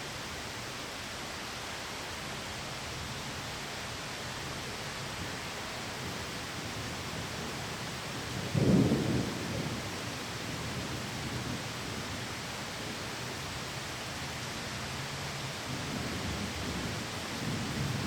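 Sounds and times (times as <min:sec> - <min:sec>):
heavy rain: 0:00.0 - 0:18.0
thunder clap rumbling: 0:06.8 - 0:13.1.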